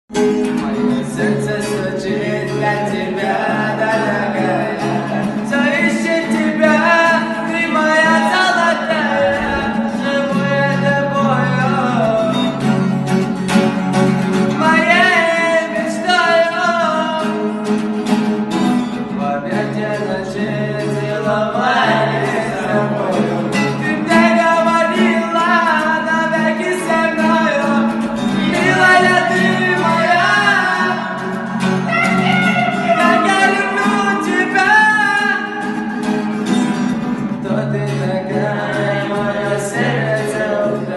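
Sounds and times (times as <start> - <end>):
person singing: 0.3 - 12.5.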